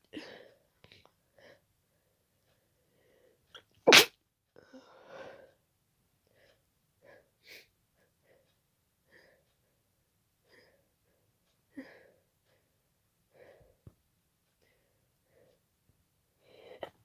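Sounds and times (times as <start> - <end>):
loud wet sneeze: 3.9 - 4.1.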